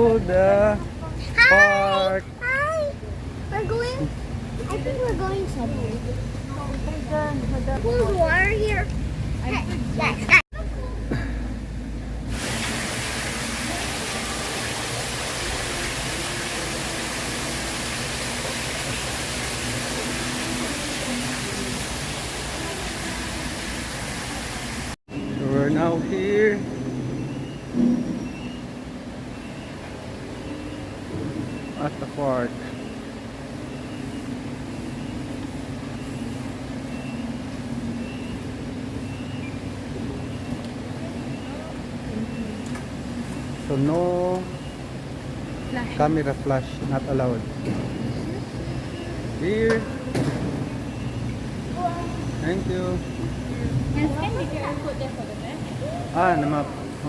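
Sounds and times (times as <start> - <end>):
falling water rushing: 12.2 - 25.0.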